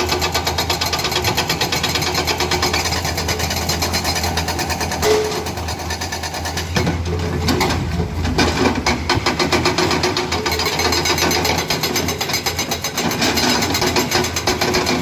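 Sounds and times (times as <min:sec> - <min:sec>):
diesel engine running: 0:00.0 - 0:15.0
hydraulic breaker hammering: 0:08.4 - 0:15.0.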